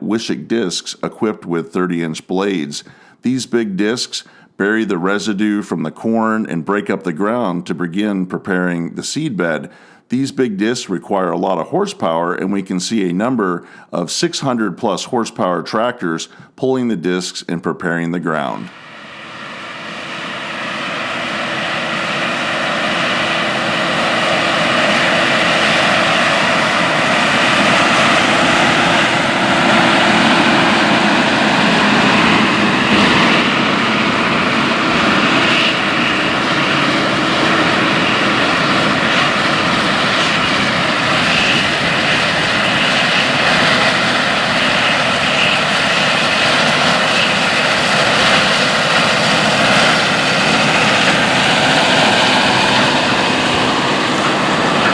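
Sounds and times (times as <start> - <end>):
disc harrow working ground: 19.3 - 54.9
diesel tractor engine under load: 36.3 - 54.9.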